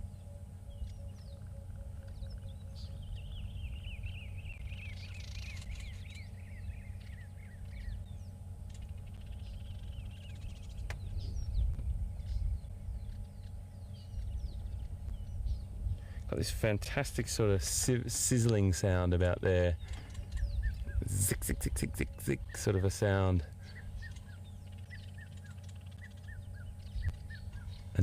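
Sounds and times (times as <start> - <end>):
steady low rumble: 0.0 - 28.0
weaver birds chirping: 0.0 - 28.0.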